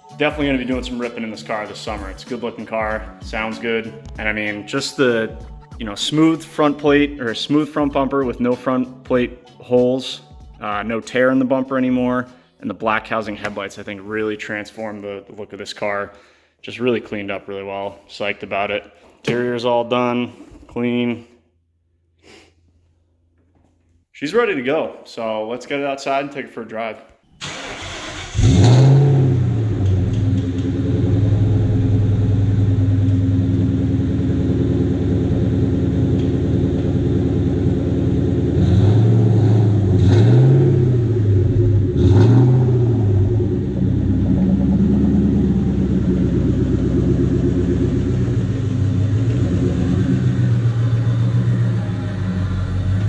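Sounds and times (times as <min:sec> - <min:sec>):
car engine idling and revving: 0:27.4 - 0:53.0.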